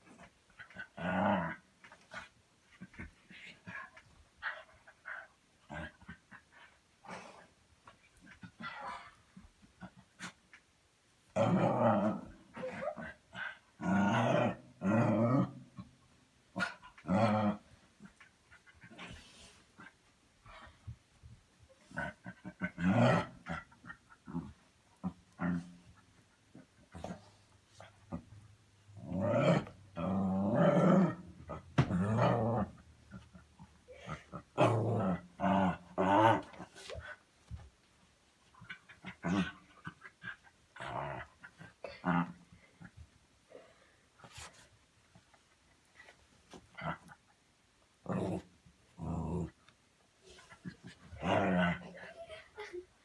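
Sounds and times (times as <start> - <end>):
dog growling: 11.4 - 15.9, 29.0 - 36.8, 48.0 - 49.6.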